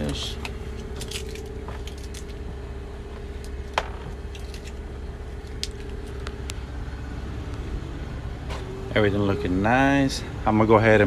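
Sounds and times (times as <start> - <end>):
items clicking and rustling: 0.0 - 6.6
low hum: 0.0 - 11.0.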